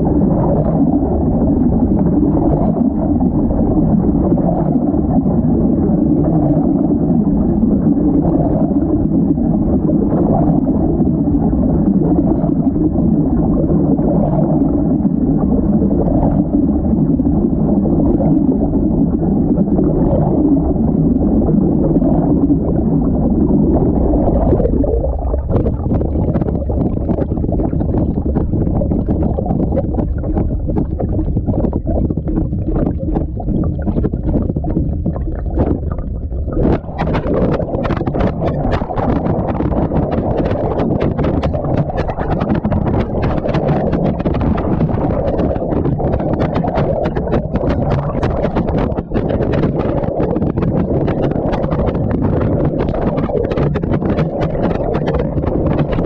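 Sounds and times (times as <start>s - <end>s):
washing machine water sloshing: 23.6s - 56.0s.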